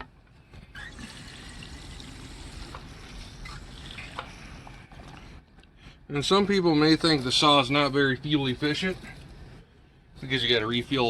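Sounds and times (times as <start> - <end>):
fuel pouring into tank: 0.8 - 5.3.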